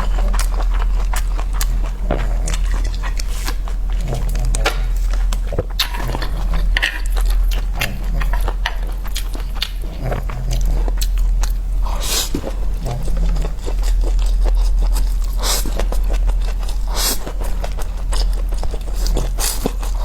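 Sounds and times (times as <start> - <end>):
person chewing and biting: 0.0 - 16.8
low hum: 0.0 - 19.3.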